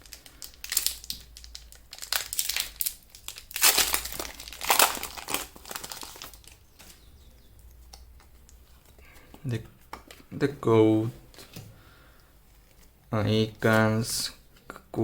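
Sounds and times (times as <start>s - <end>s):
foil wrapper crinkling and tearing: 0.0s - 6.7s.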